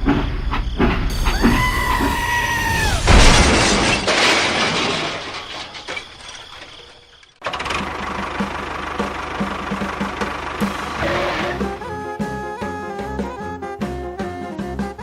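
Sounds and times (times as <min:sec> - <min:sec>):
loud crash: 0:01.1 - 0:07.4.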